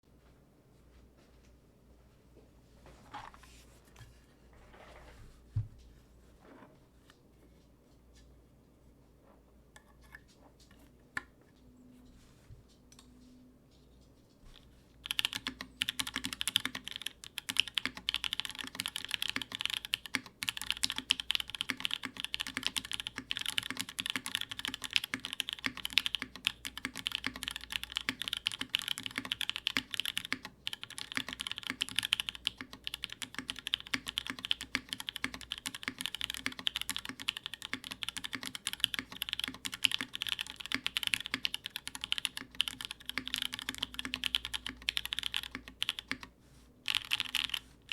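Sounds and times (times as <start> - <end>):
fast typing on mechanical keyboard: 15.0 - 46.3, 46.9 - 47.9.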